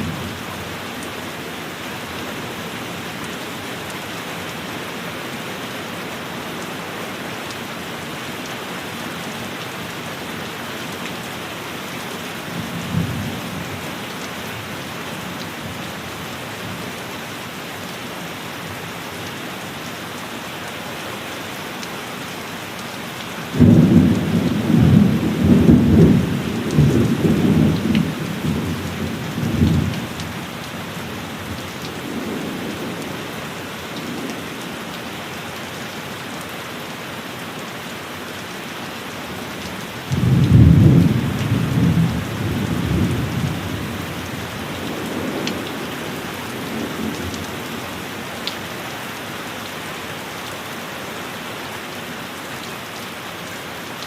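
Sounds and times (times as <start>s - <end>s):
heavy rain: 0.0s - 54.0s
thunder rumbling: 23.6s - 30.2s, 40.1s - 47.8s.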